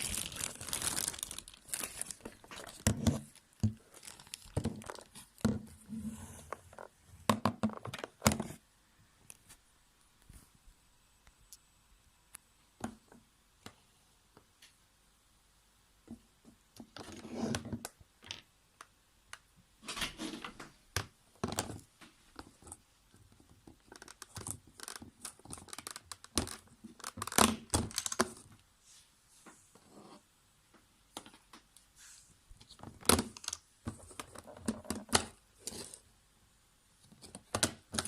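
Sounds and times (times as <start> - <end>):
packaging rustling and clattering: 0.0 - 6.9.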